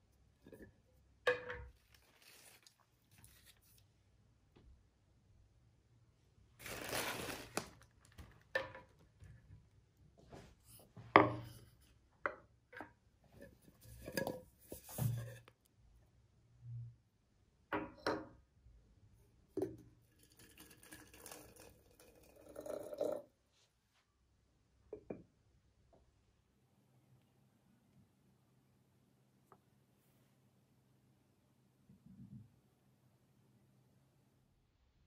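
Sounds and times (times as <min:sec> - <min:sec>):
dishes knocking and clinking: 0:01.3 - 0:01.7.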